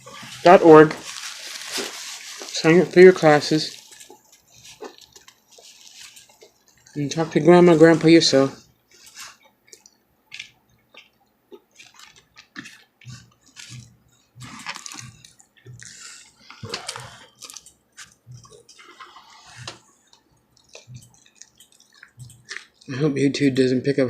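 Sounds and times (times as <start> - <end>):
person chewing and lip-smacking: 3.7 - 7.0, 8.8 - 23.0.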